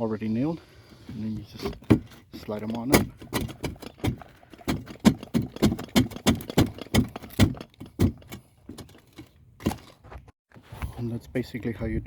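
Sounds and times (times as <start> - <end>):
roof tiles clacking: 1.1 - 10.2.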